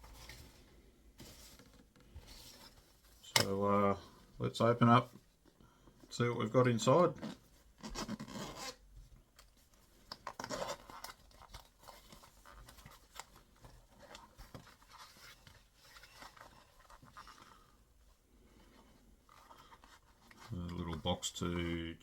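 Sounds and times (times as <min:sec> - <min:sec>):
packaging rustling and scratching: 0:07.2 - 0:08.8, 0:09.4 - 0:17.7, 0:18.6 - 0:21.2.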